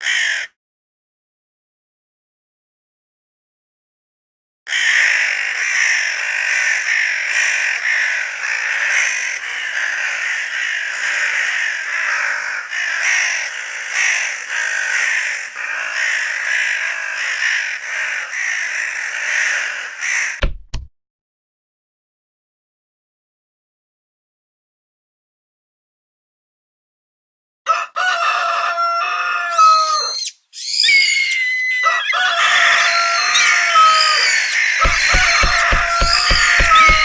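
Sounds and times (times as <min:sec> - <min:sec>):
crows cawing: 0:00.0 - 0:00.6, 0:04.7 - 0:20.4, 0:27.7 - 0:37.0.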